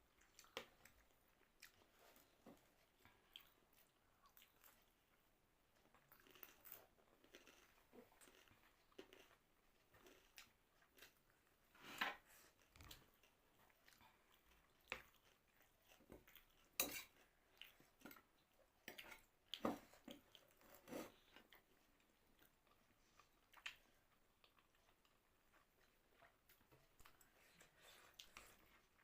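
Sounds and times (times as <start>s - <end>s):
person chewing: 0.1s - 5.1s, 5.7s - 11.5s, 12.6s - 29.0s.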